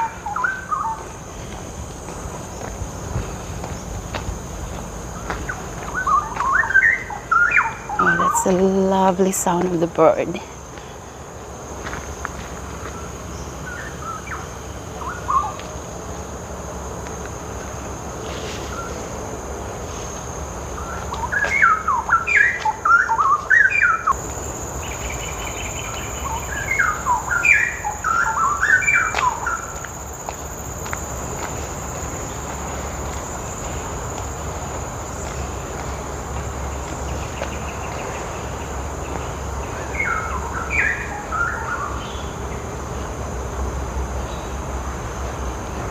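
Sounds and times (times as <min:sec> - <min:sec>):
high insect drone: 0:00.0 - 0:45.9
bird chirping: 0:05.2 - 0:08.6, 0:20.8 - 0:29.8.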